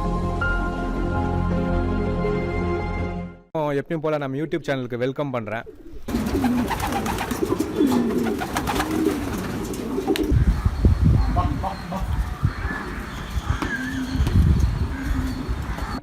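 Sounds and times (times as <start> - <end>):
pigeons cooing: 5.7 - 16.0.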